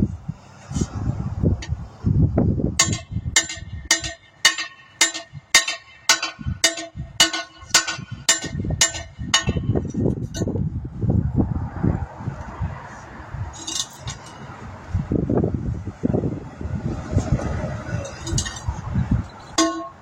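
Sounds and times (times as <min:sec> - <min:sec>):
hammer ringing on metal rim: 0:02.8 - 0:10.5, 0:19.6 - 0:20.0.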